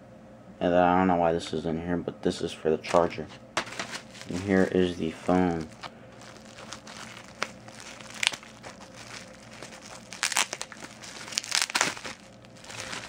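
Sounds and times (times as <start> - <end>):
packaging crinkling: 2.9 - 13.0.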